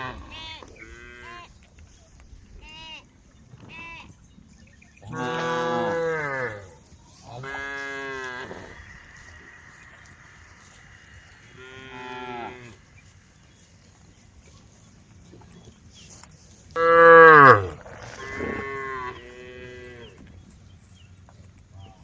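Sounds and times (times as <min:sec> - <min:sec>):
cows mooing: 0:05.1 - 0:06.8, 0:16.8 - 0:20.1.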